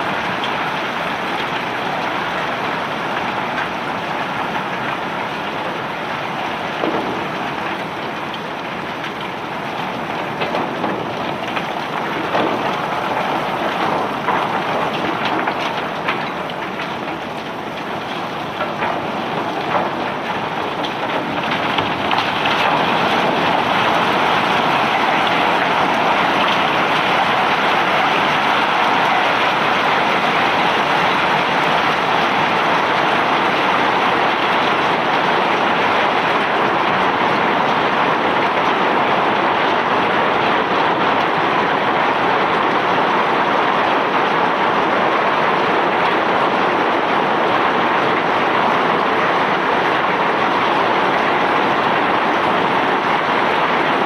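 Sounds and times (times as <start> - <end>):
rock pouring off conveyor: 0.0 - 41.4.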